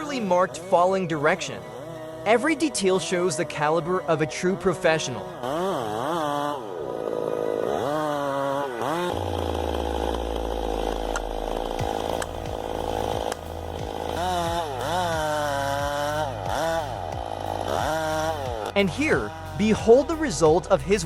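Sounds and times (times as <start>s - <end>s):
chainsaw engine revving: 0.0s - 21.0s.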